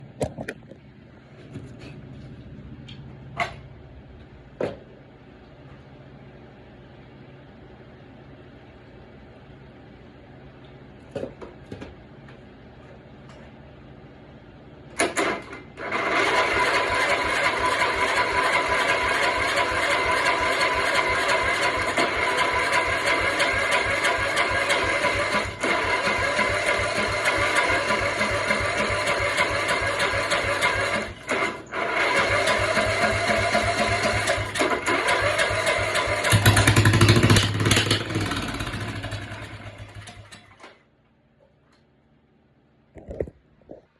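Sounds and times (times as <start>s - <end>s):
small engine starting and running: 15.0s - 40.8s.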